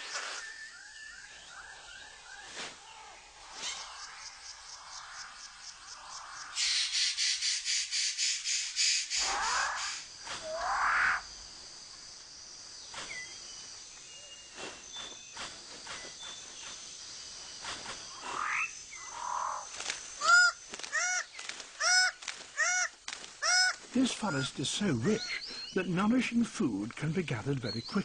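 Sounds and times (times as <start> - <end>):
thin insect tones: 3.4 - 26.3
loud repeated bird call: 6.5 - 11.3
bird calls: 17.6 - 26.5.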